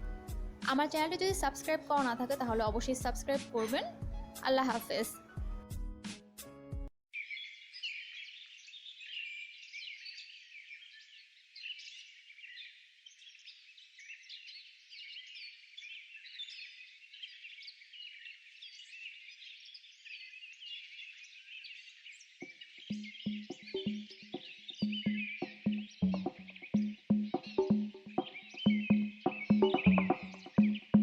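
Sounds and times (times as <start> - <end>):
small birds chirping: 7.2 - 31.0.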